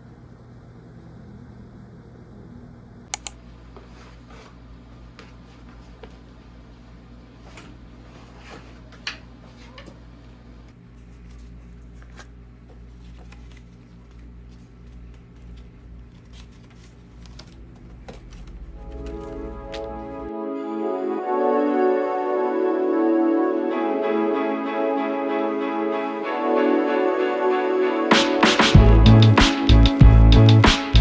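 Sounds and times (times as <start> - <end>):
steady low hum: 0.0 - 20.4
sharp clicks: 3.2 - 3.4.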